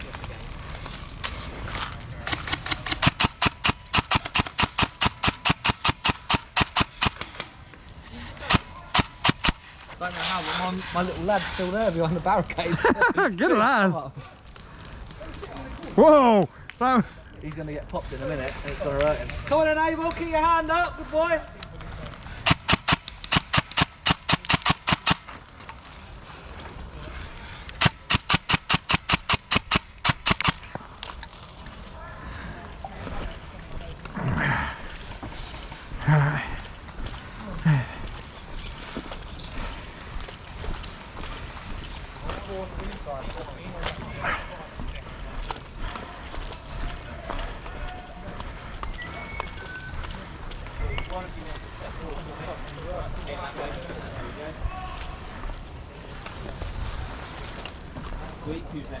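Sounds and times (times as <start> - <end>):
airsoft guns firing: 2.2 - 7.6, 8.4 - 9.9, 22.4 - 25.4, 27.7 - 30.8.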